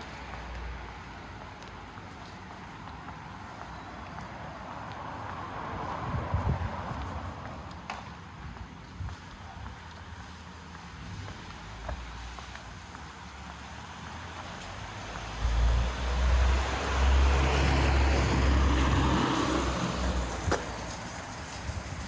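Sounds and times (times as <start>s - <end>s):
car driving past: 14.2s - 21.6s.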